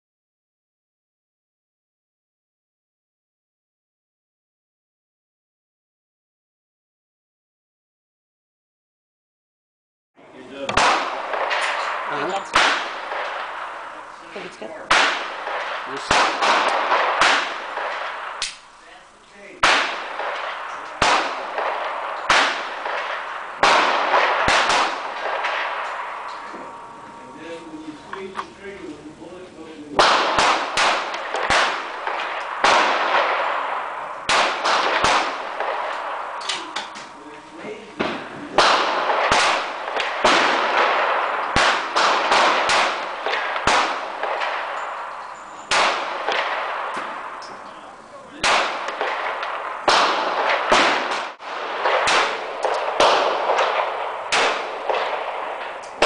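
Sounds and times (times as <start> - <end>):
pistol shots with echo: 10.6 - 18.7, 19.6 - 28.5, 29.9 - 37.4, 38.0 - 56.0.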